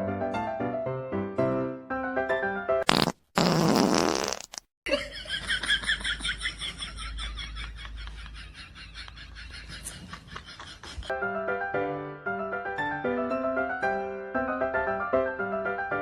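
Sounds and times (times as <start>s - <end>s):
buzzy fart noise: 2.8s - 4.6s.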